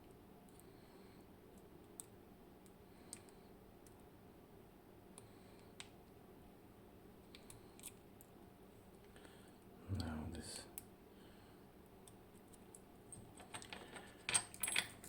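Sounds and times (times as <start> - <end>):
low steady hum: 0.0 - 15.0
small metal lock parts clicking: 12.5 - 15.0.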